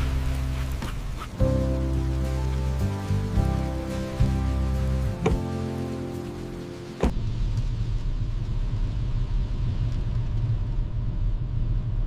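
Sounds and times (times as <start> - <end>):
soft music: 0.0 - 7.1
car driving rumble: 0.0 - 12.0.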